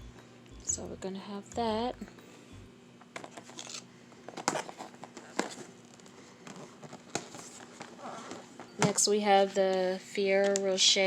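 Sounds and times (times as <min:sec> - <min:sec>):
packaging rustling and crinkling: 0:03.2 - 0:10.6.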